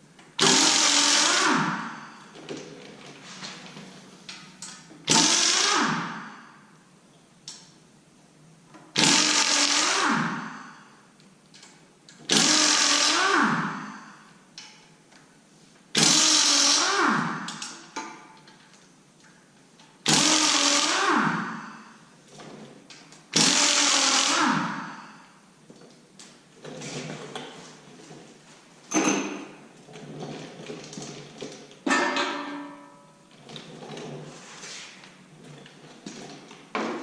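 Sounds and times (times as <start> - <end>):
power tool spinning: 16.0 - 17.4, 23.4 - 24.9.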